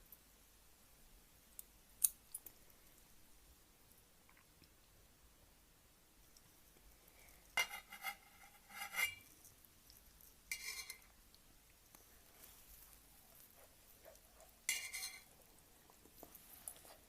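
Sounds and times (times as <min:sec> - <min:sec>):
utensils clinking against bowl: 0:10.5 - 0:11.1, 0:14.7 - 0:15.3.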